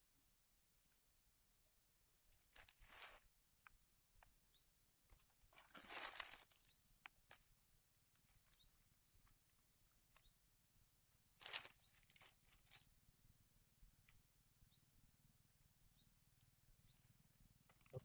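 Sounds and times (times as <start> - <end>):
faint rustling and crunching: 2.0 - 4.4, 5.0 - 14.2, 17.3 - 18.0
small bird calling: 8.4 - 9.0, 10.1 - 10.6, 11.4 - 18.0.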